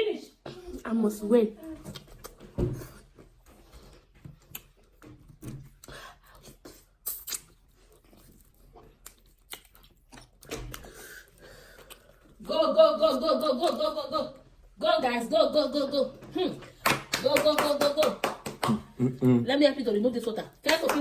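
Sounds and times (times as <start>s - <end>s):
wet mouth eating sounds: 3.9s - 12.5s.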